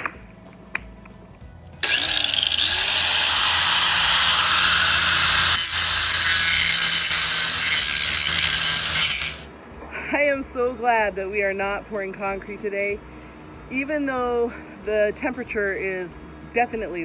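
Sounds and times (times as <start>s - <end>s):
power tool cutting wood: 1.4s - 9.5s.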